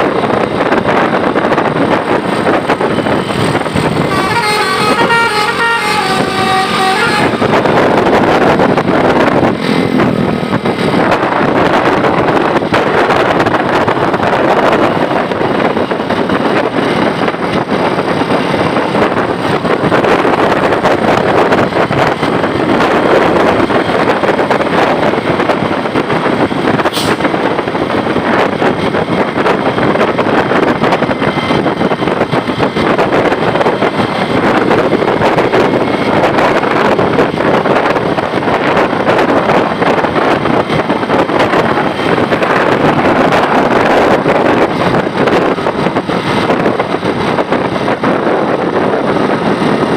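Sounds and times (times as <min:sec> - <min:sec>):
bus running close by: 0:00.0 - 0:49.9
multi-tone bus horn: 0:02.6 - 0:09.5.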